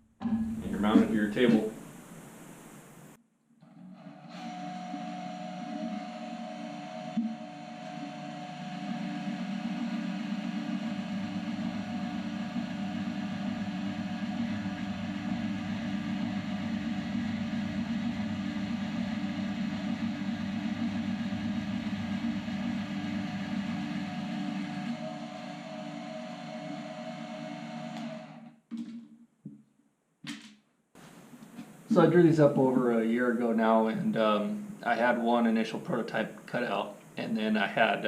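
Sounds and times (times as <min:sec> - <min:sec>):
band saw motor running: 0:04.3 - 0:28.5.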